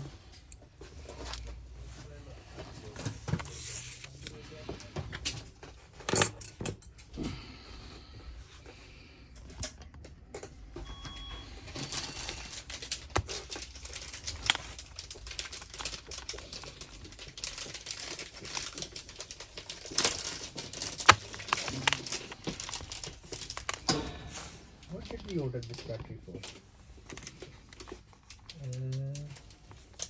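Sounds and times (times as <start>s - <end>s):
laptop casing clicks and snaps: 21.0s - 22.0s.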